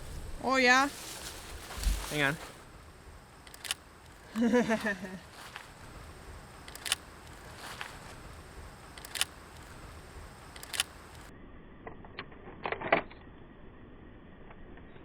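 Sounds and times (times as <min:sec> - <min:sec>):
camera shutter clicks: 0:03.4 - 0:03.8, 0:06.6 - 0:08.0, 0:08.9 - 0:09.7, 0:10.5 - 0:11.3.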